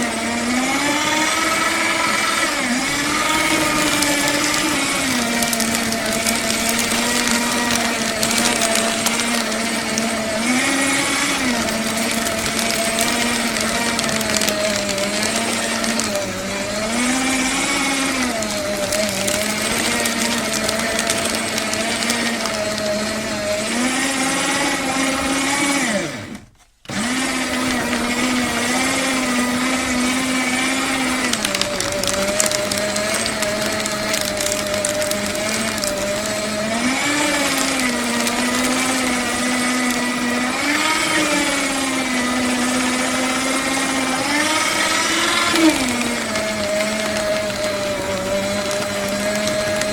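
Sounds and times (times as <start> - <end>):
paper shredder motor: 0.0 - 49.9.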